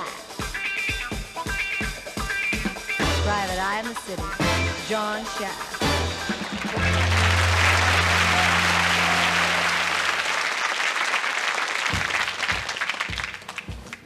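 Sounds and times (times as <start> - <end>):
studio audience applauding: 5.8 - 14.0.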